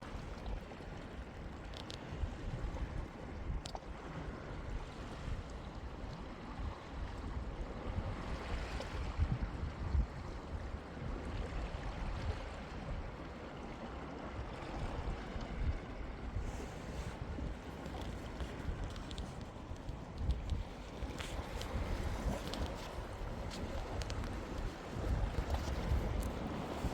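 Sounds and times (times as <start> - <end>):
wind buffeting microphone: 6.6 - 13.3, 14.4 - 26.9.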